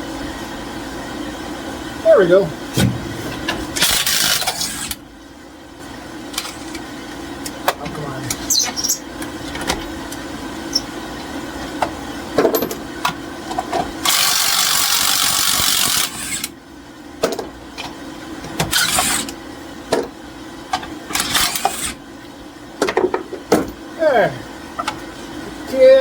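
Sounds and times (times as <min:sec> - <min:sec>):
impact wrench spinning: 0:03.7 - 0:05.0, 0:14.0 - 0:16.5, 0:18.7 - 0:19.3, 0:21.2 - 0:22.0.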